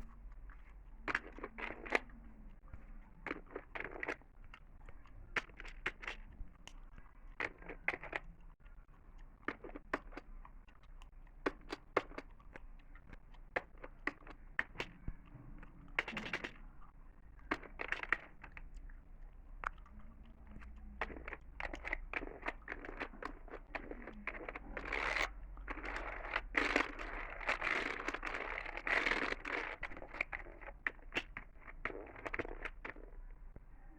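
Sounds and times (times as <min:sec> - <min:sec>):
gum chewing: 0:00.0 - 0:33.9
tapping on a computer: 0:09.5 - 0:10.3, 0:13.5 - 0:16.7.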